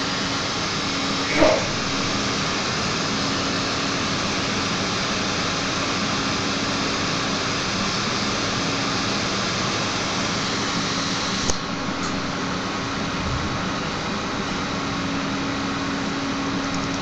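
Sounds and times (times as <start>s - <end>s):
faint hum: 0.0s - 3.3s
computer fans rushing air: 0.0s - 5.4s.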